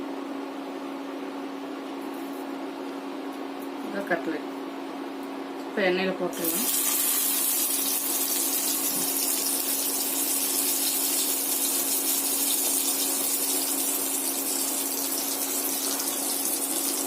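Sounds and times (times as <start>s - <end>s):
cutlets sizzling in hot oil: 6.4s - 17.0s.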